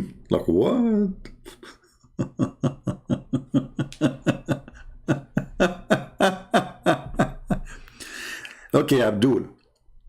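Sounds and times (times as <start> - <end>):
man laughing: 1.3 - 7.8.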